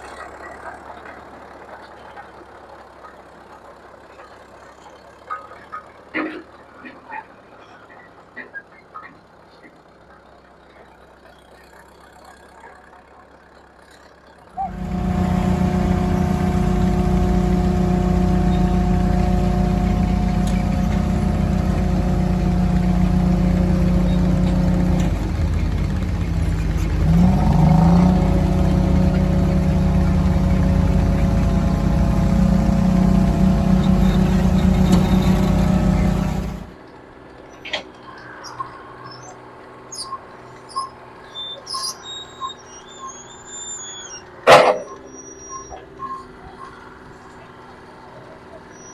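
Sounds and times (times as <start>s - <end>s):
engine droning hum: 14.5s - 36.8s
outdoor background noise: 14.5s - 48.9s.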